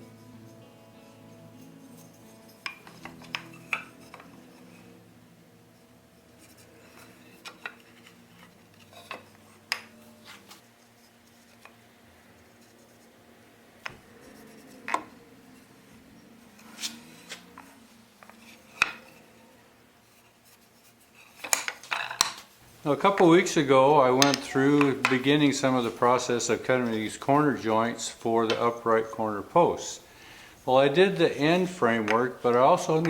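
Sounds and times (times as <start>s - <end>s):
background music: 0.0s - 19.9s, 22.7s - 33.0s
hand tools clinking on workbench: 23.0s - 29.1s.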